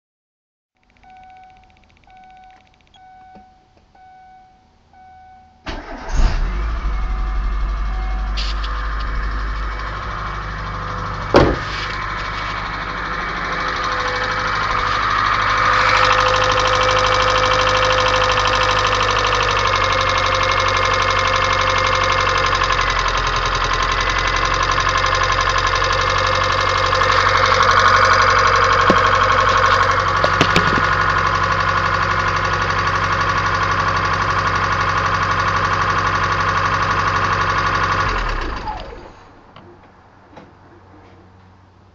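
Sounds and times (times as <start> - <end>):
car engine ticking: 5.6 - 38.8.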